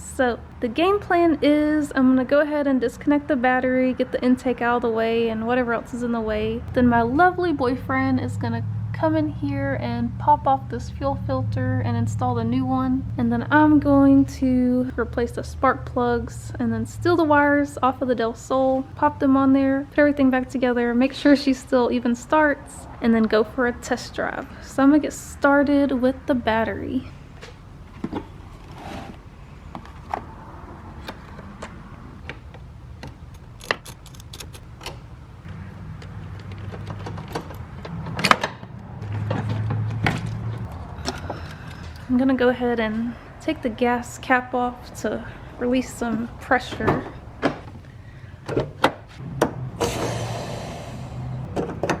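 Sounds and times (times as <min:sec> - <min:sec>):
low steady hum: 0:00.0 - 0:52.0
hand tools clicking on metal: 0:33.0 - 0:35.0
pressure hissing from tank: 0:49.8 - 0:51.3.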